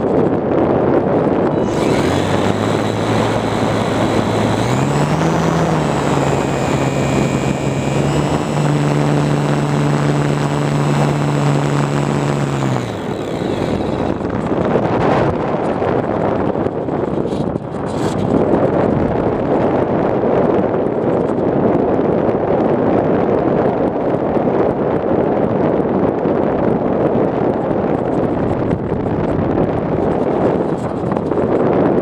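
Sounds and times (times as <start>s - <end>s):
wind noise on microphone: 0.0s - 32.0s
model plane motor whine: 1.4s - 18.4s.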